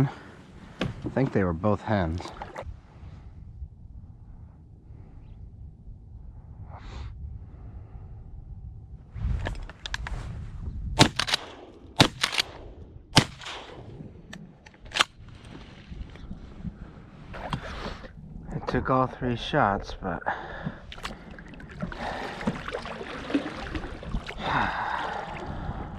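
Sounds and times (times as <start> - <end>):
low outdoor rumble: 0.0 - 25.9
shotgun shots: 11.0 - 14.0.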